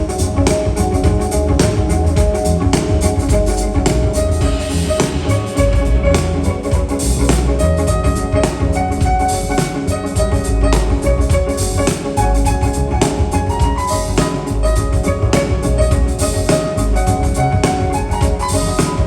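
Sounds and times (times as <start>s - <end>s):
bass line: 0.0s - 19.0s
drum kit: 0.0s - 19.0s
piano chords: 0.0s - 19.0s.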